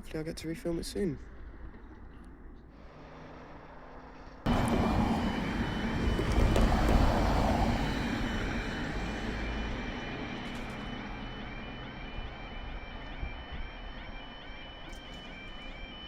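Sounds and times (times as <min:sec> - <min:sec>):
train rumble: 0:04.5 - 0:16.0.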